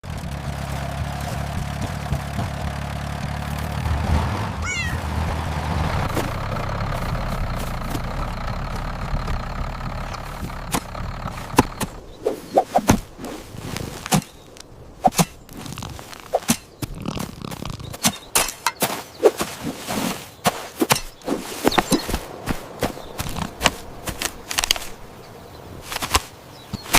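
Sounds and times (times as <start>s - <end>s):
sharp taps and soft thuds: 0.0s - 3.9s, 4.6s - 25.1s, 25.8s - 26.9s
small tractor engine running: 0.0s - 18.5s, 20.5s - 26.9s
kitten mewing: 4.6s - 5.1s.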